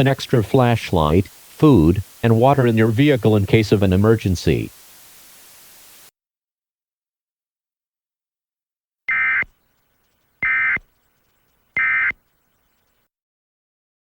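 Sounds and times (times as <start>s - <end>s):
digital data tone bursts: 9.1s - 13.1s.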